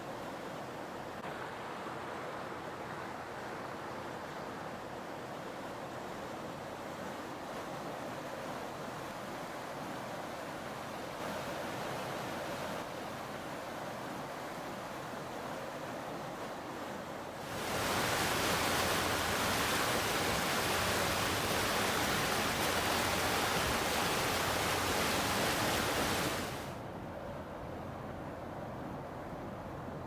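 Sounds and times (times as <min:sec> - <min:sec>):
wind: 0:00.0 - 0:30.0
water rushing around a boat: 0:17.4 - 0:26.8.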